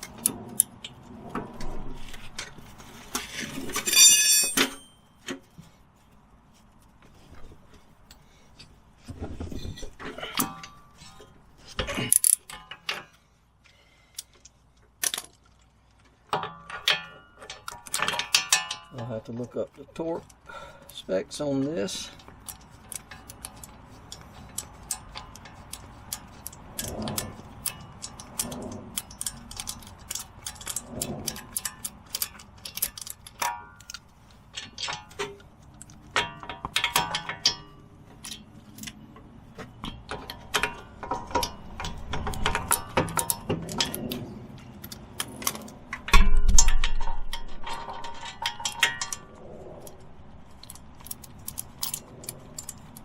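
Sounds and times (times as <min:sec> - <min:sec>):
hand tools clicking on metal: 0:16.3 - 0:53.0.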